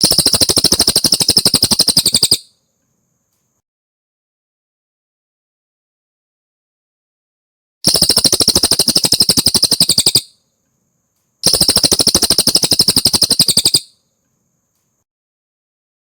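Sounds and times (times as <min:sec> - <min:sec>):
bird rapid trills: 0:00.0 - 0:02.5, 0:07.8 - 0:10.4, 0:11.4 - 0:13.9.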